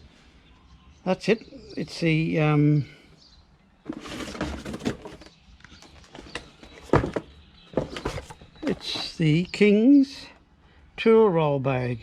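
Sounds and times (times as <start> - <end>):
knocks and clunks: 3.9 - 9.2.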